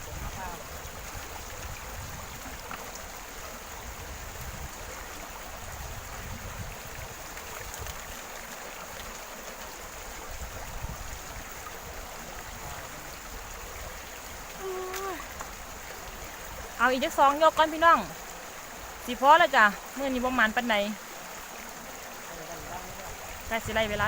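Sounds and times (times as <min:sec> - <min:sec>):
water noise: 0:00.0 - 0:24.0.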